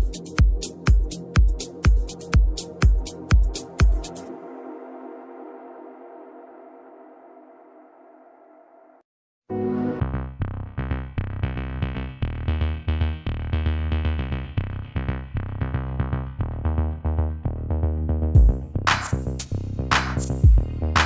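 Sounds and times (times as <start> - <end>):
drum-machine beat: 0.0 - 4.2, 18.4 - 21.0.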